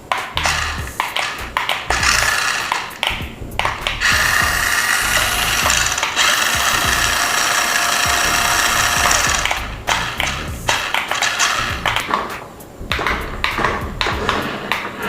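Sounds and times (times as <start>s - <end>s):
toy truck motor and gears whirring: 0.4s - 0.9s, 1.9s - 3.0s, 3.9s - 10.5s, 11.2s - 11.8s.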